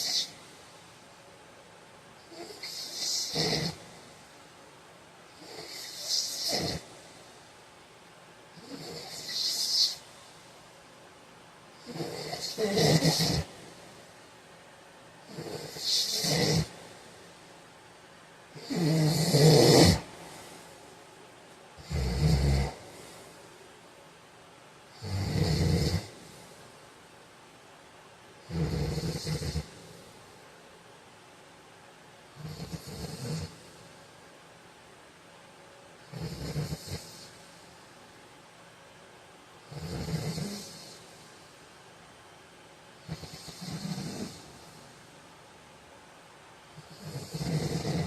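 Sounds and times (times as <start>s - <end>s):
man snoring: 0.0s - 0.4s, 2.3s - 3.9s, 5.4s - 6.9s, 8.6s - 10.0s, 11.8s - 13.5s, 15.3s - 16.8s, 18.6s - 20.1s, 21.8s - 23.2s, 25.0s - 26.2s, 28.4s - 29.8s, 32.4s - 33.6s, 36.1s - 37.4s, 39.7s - 41.0s, 43.1s - 44.5s, 46.8s - 48.0s.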